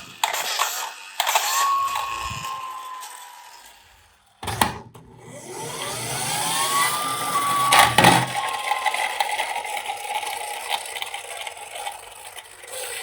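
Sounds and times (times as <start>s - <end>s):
police siren wailing: 1.4s - 3.7s, 6.2s - 9.2s.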